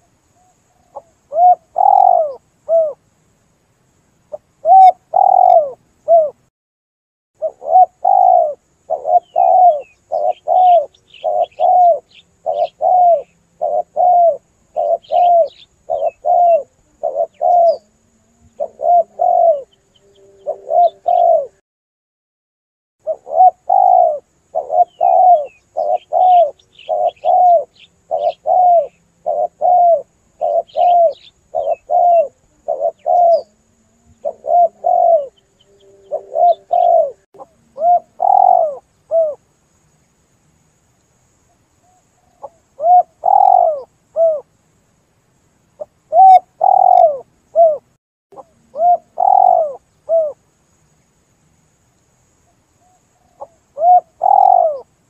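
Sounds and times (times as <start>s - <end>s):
small birds twittering: 0.1s - 3.0s, 4.3s - 6.4s, 7.4s - 21.5s, 23.0s - 33.6s, 34.2s - 39.4s, 41.4s - 44.4s, 45.8s - 51.2s, 52.4s - 54.9s
dove cooing: 0.7s - 3.0s, 4.3s - 6.4s, 7.4s - 21.6s, 23.0s - 39.4s, 42.2s - 44.5s, 45.8s - 50.4s, 52.8s - 54.9s.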